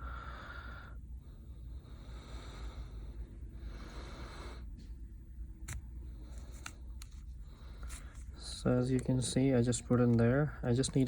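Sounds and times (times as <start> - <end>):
steady low hum: 0.0 - 11.0
faint scraping and handling: 5.6 - 11.0.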